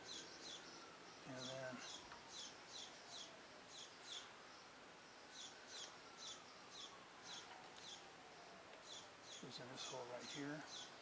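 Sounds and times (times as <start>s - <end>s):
small bird chirping: 0.0s - 11.0s.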